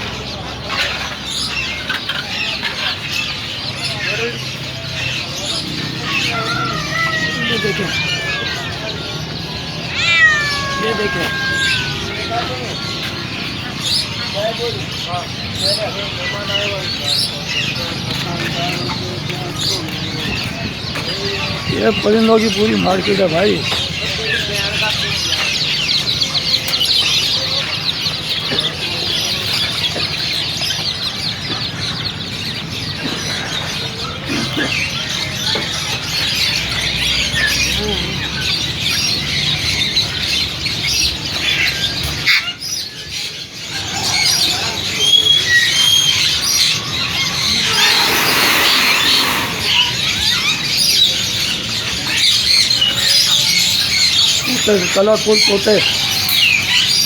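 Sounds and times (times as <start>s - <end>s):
caged birds chirping: 0.0s - 57.0s
bird squawks and whistles: 47.4s - 50.5s.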